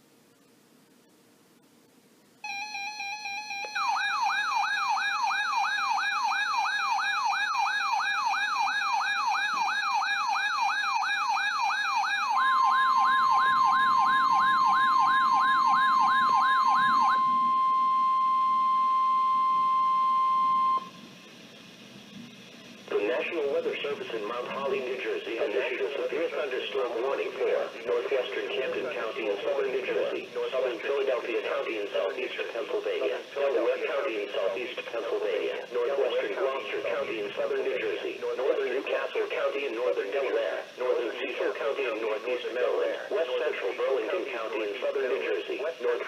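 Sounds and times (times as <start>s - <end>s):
faint static: 0.0s - 46.0s
electronic siren wailing: 2.4s - 21.0s
steady warning alarm tone: 2.4s - 21.8s
buzzing tone: 12.5s - 21.1s.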